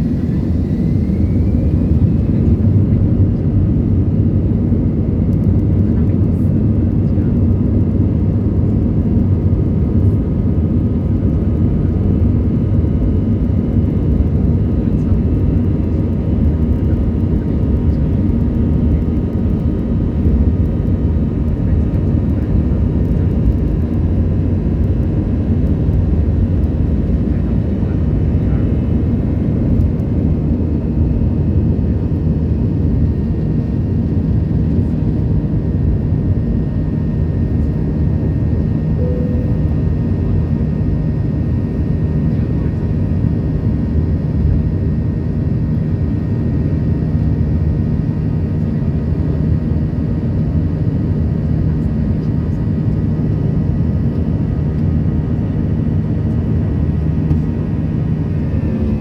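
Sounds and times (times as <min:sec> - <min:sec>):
jet engines rumbling in cabin: 0:00.0 - 0:59.0
faint steady tones: 0:39.0 - 0:40.0.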